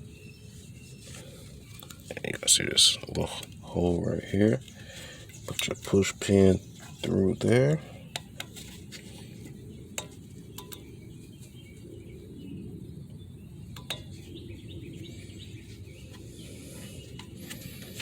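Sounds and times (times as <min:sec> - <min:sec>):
light plastic clicks: 0:10.0 - 0:10.9.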